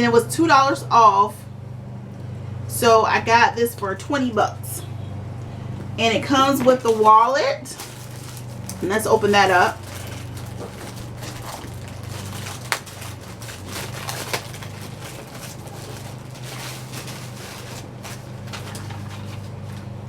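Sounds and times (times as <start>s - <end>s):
steady low hum: 0.0s - 20.0s
packaging crinkling and rustling: 6.2s - 20.0s.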